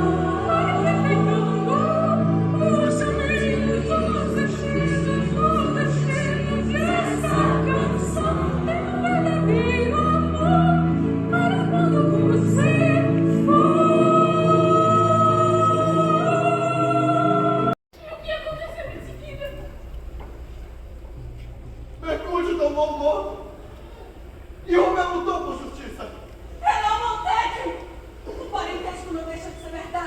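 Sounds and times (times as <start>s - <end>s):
operatic choir singing: 0.0s - 17.8s.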